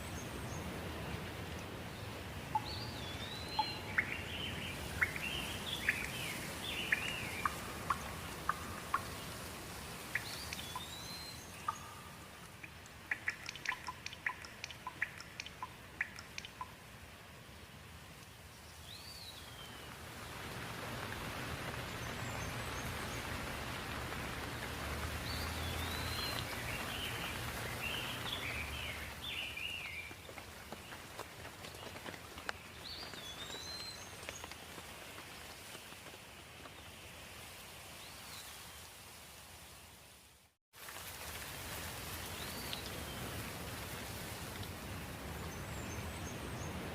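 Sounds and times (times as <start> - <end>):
light rain hiss: 0.0 - 46.9
drops ticking and dripping: 2.5 - 17.0, 20.4 - 34.8.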